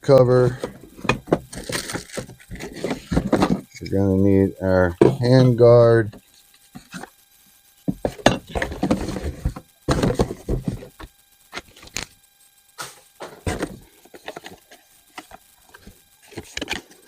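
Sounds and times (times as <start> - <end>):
rustling and handling noise: 0.0 - 17.0.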